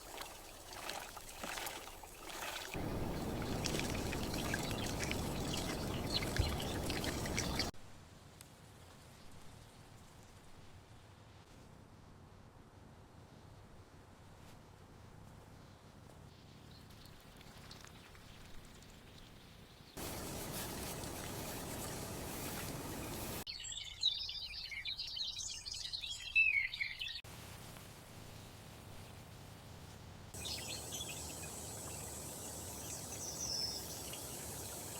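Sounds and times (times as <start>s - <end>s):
liquid pouring and sloshing: 0.0s - 7.7s, 20.0s - 23.4s
birds chirping: 2.6s - 7.7s, 20.0s - 27.2s, 30.4s - 34.9s
steady rushing noise: 2.8s - 7.7s.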